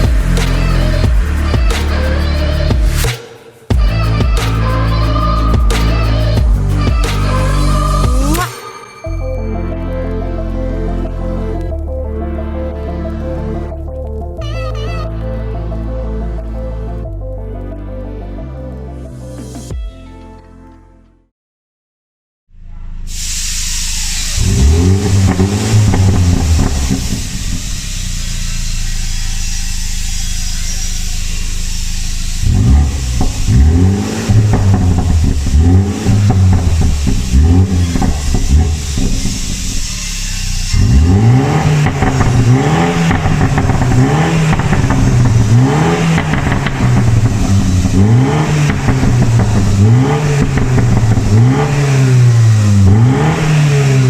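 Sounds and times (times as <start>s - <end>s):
car engine revving: 0.0s - 8.5s, 23.6s - 54.0s
exhaust pops and crackles: 24.4s - 28.0s, 32.7s - 39.8s, 41.6s - 51.8s.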